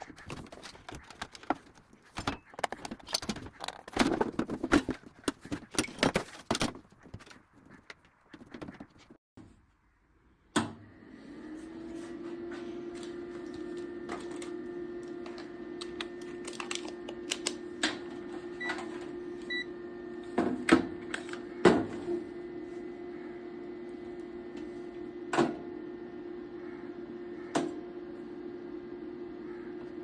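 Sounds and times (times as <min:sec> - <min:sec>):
electrical hum: 0:10.3 - 0:30.0.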